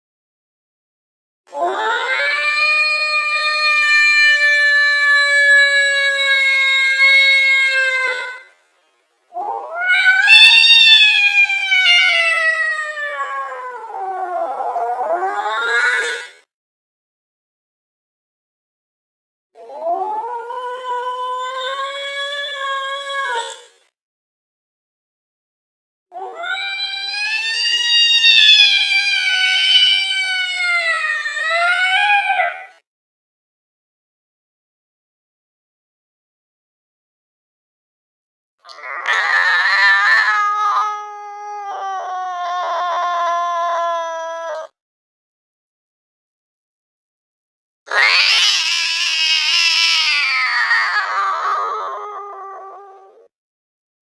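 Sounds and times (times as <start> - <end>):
angry cat yowling: 9.4 - 16.4, 19.6 - 23.8, 26.2 - 32.8, 38.7 - 44.8, 47.9 - 53.3.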